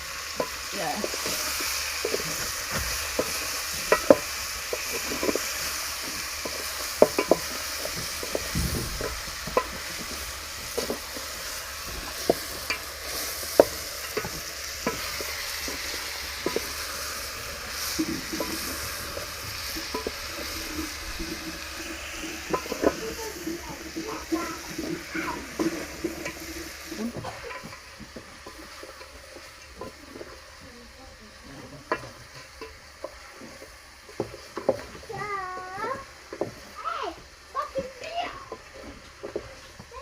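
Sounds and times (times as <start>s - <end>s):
vegetables sizzling in a pan: 0.0s - 40.0s
spoon knocking against a pan: 2.0s - 12.9s, 13.5s - 29.1s.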